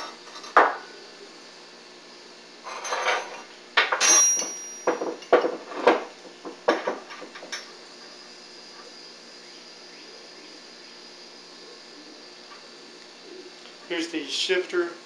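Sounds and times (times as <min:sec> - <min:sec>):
steel parts clanking and rattling: 0:02.6 - 0:06.1.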